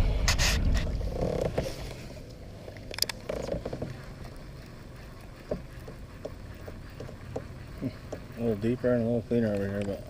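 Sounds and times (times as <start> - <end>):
water against hull: 0.0 - 10.0
light knocks: 5.4 - 8.3.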